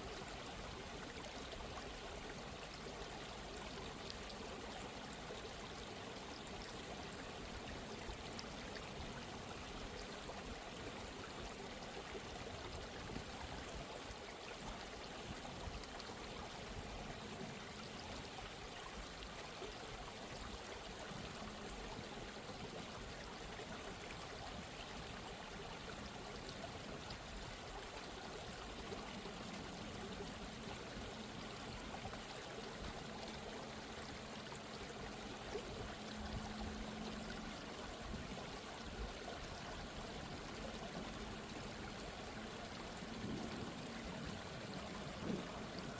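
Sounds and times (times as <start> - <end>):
stream water rushing: 18.2 - 45.9.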